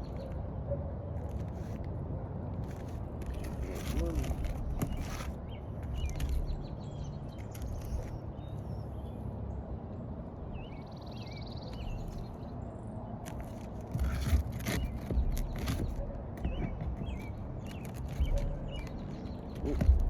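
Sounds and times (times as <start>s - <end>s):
birds chirping faintly: 2.7s - 20.0s
scraping on roof shingles: 13.2s - 18.9s
knocks on roof shingles: 13.9s - 20.0s.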